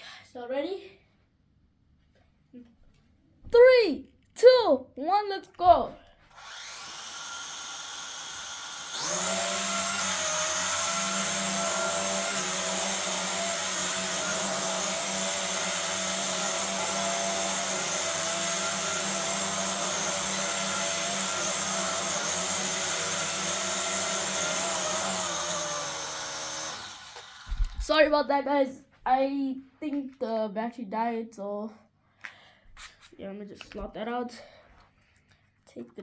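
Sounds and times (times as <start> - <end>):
toy drone motors whining: 6.3 - 27.8.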